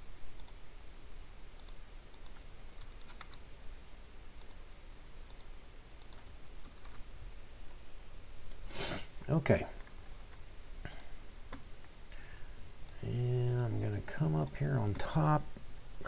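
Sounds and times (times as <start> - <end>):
low room hum: 0.0 - 16.0
computer mouse clicks: 0.4 - 0.6, 1.6 - 3.4, 4.4 - 4.6, 5.3 - 7.0.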